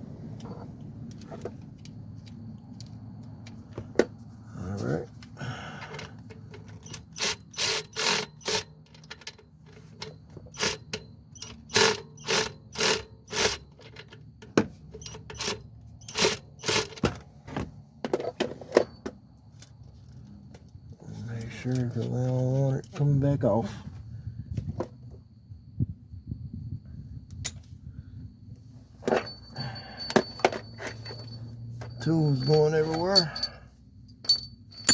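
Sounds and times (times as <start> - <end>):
ratchet wrench clicking: 6.8 - 9.1, 10.5 - 13.7, 15.0 - 16.9.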